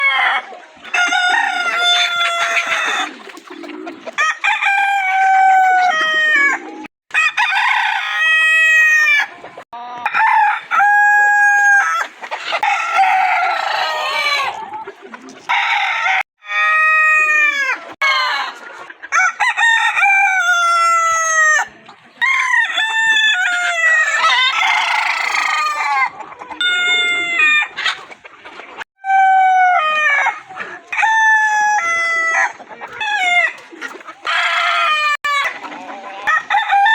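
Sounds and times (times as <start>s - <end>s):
roosters crowing: 0.0s - 9.4s, 10.0s - 14.6s, 15.5s - 28.0s, 29.0s - 36.9s.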